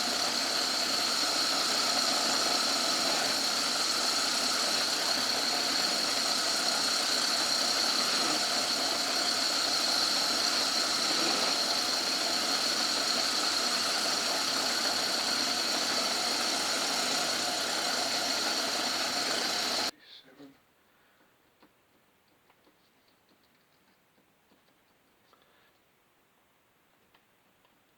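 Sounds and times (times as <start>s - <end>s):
lathe running with high whine: 0.0s - 19.9s.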